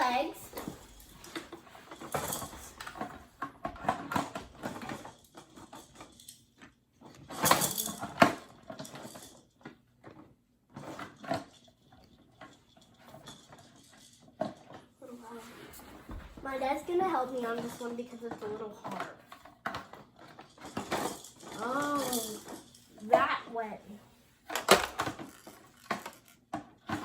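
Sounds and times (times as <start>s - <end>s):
plastic clatter: 0.5s - 14.9s, 17.4s - 23.1s, 24.5s - 27.0s
plastic parts knocking and clicking: 0.6s - 14.9s, 24.5s - 27.0s.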